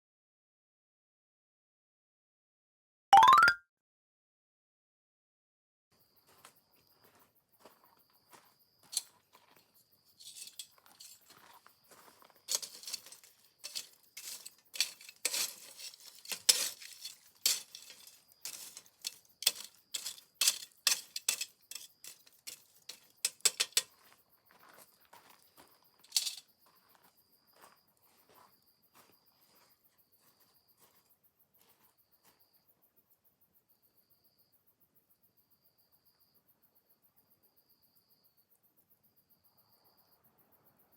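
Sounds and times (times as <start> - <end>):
crickets chirping: 6.0 - 40.9
metal utensils scraping cookware: 10.2 - 11.4, 12.5 - 24.0, 26.1 - 26.4.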